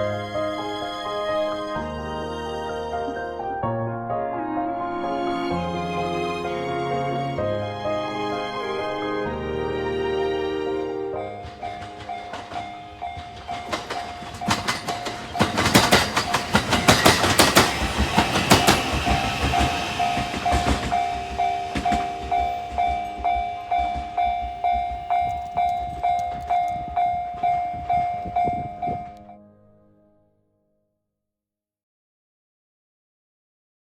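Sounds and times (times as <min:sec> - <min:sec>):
level-crossing alarm ringing: 0:11.2 - 0:29.2
train wheels clattering: 0:11.2 - 0:29.3.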